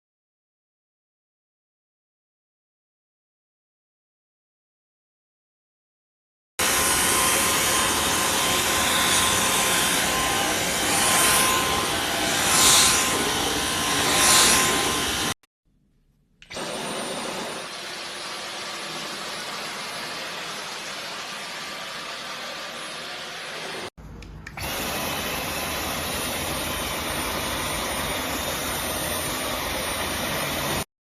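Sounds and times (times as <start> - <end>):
vacuum cleaner rush and whine: 6.6 - 15.4, 16.5 - 23.9, 24.6 - 30.9.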